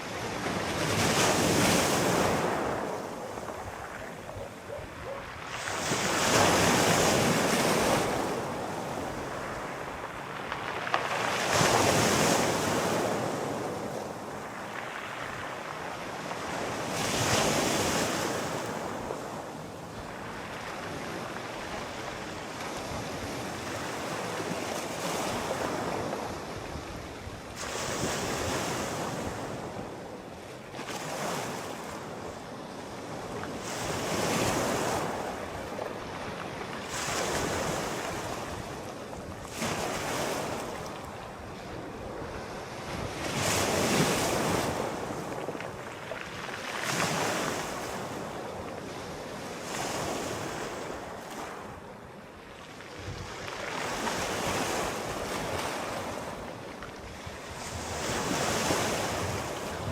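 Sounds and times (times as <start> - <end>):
sea waves breaking on shore: 0.0 - 59.9.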